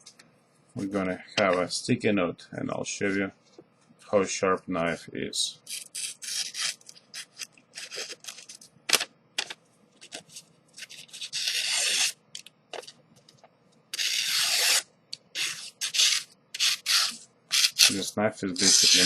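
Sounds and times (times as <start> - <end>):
knife slicing paper: 10.8 - 12.2, 14.0 - 14.8, 15.4 - 18.0.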